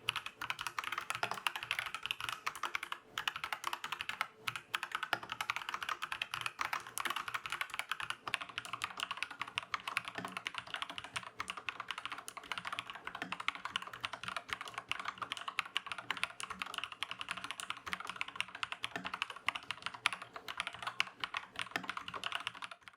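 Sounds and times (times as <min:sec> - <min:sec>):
mechanical keyboard typing: 0:00.0 - 0:22.9.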